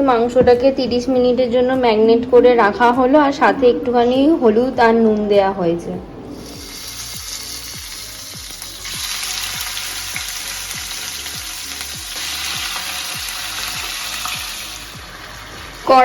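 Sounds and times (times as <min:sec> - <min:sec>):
chicken frying in hot oil: 0:06.4 - 0:16.0.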